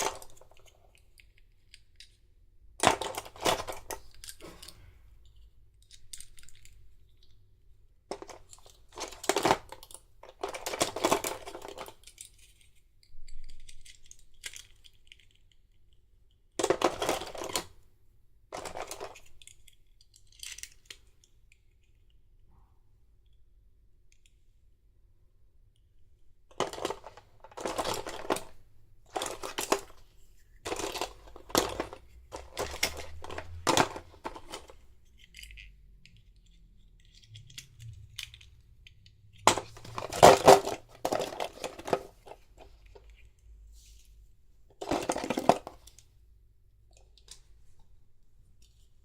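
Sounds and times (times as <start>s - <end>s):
packaging rustling and tearing: 39.5s - 42.7s.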